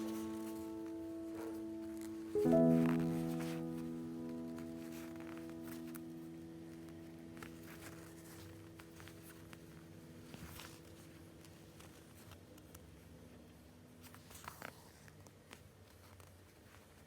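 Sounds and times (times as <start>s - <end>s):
held music chord: 0.0s - 9.1s
faint rustles: 0.0s - 17.0s.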